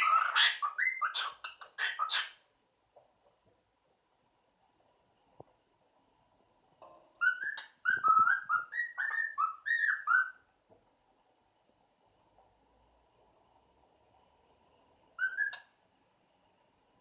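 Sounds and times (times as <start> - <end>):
cockatiel whistling: 0.0 - 2.3, 7.2 - 10.4, 15.2 - 15.7.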